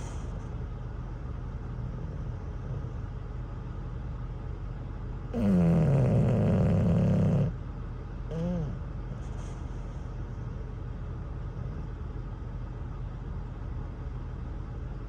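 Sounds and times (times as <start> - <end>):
dog snoring: 1.8 - 3.2, 5.3 - 7.6, 8.3 - 10.1.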